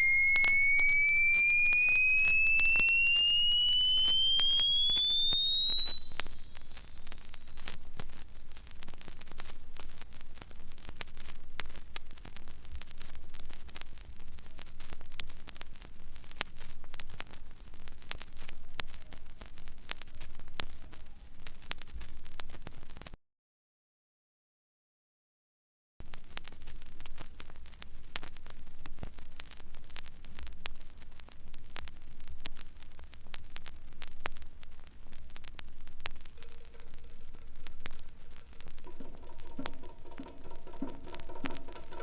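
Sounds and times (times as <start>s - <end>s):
faint crackling clicks: 0.0s - 23.2s, 26.0s - 42.0s
rising electronic oscillator tone: 0.0s - 23.2s, 26.0s - 30.0s.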